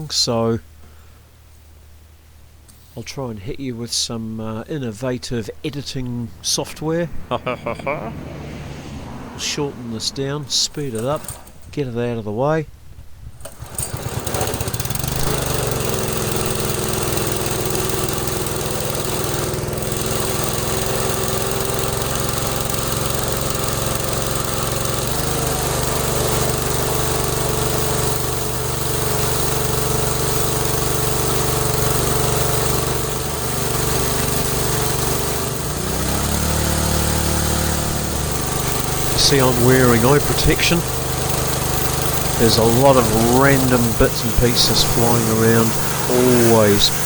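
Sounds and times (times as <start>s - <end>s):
pressure washer engine drone: 5.7s - 11.7s, 13.4s - 47.0s
spray hissing: 35.8s - 47.0s.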